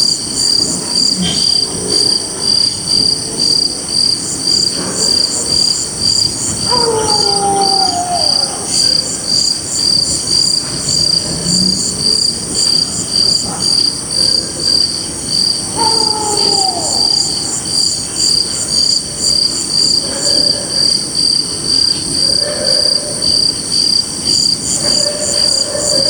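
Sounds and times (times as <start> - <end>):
crickets chirping: 0.0 - 26.0
faint falling call: 15.7 - 17.7.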